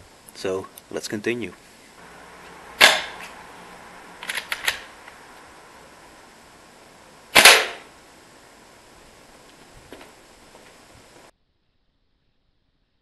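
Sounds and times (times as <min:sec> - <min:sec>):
airsoft rifle shots: 0:02.8 - 0:03.4, 0:04.2 - 0:05.0, 0:07.3 - 0:07.9.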